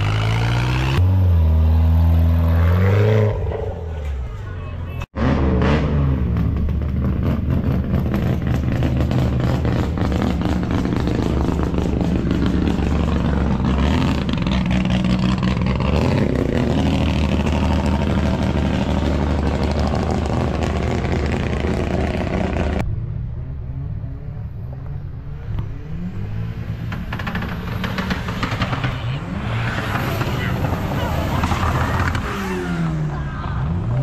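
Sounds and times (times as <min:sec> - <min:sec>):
car engine revving: 0:05.1 - 0:22.9, 0:23.5 - 0:34.0.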